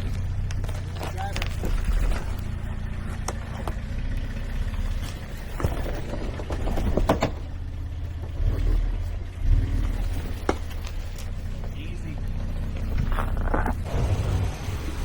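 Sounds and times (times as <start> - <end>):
truck engine running low: 0.0 - 15.0.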